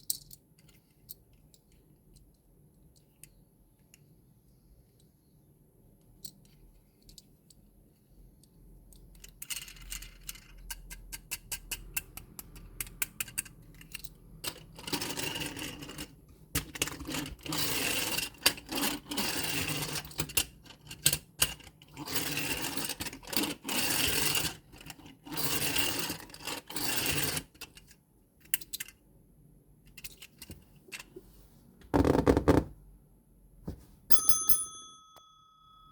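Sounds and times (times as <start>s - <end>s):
plastic toys rattling and scraping: 8.9s - 12.2s, 12.8s - 29.0s, 29.9s - 31.2s
bell-like ding: 34.1s - 35.9s.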